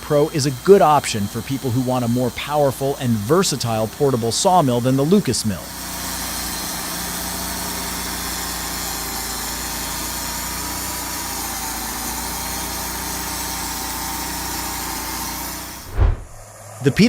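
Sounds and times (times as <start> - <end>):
machine engine running steadily: 0.0 - 16.7
low hum: 15.8 - 16.8.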